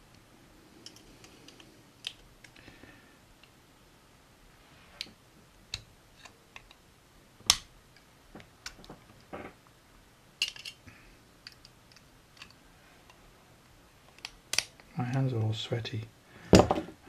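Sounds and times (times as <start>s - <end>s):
metal lock parts clicking: 10.4s - 10.8s, 14.1s - 14.9s.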